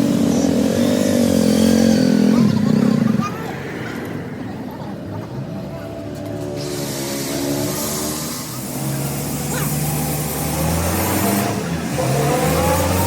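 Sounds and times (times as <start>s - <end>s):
vehicle engine revving: 0.0s - 3.3s, 6.1s - 13.0s.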